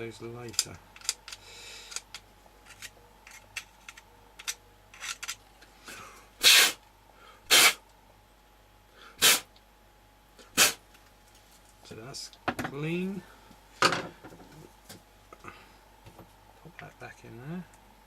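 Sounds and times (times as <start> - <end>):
small parts clicking and rustling: 0.4 - 5.7
short sharp air hissing bursts: 6.4 - 6.8, 7.5 - 7.8, 9.2 - 9.5, 10.5 - 10.8.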